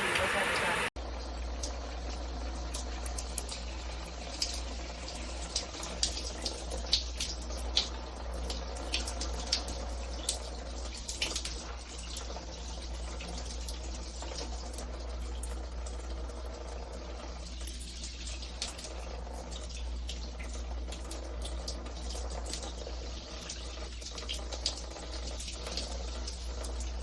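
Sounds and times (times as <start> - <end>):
water splashes and droplets: 0.0 - 0.9
shower water running: 0.0 - 27.0.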